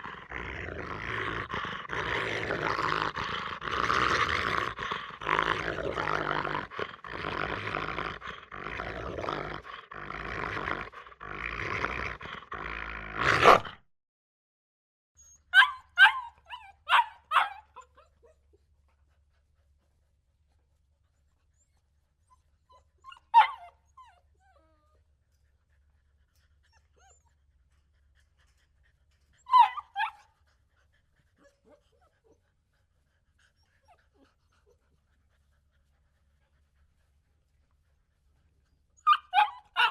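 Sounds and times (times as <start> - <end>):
dog growling: 0.0 - 13.8
dog yelping: 15.5 - 18.4, 22.7 - 24.9, 29.4 - 30.3, 39.0 - 39.9.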